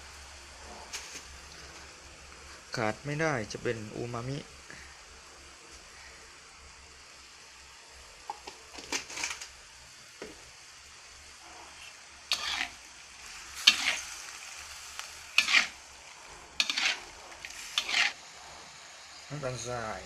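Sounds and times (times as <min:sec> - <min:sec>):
faint sizzle: 0:00.0 - 0:20.0
spatula scraping a pan: 0:11.4 - 0:14.4, 0:15.0 - 0:18.7.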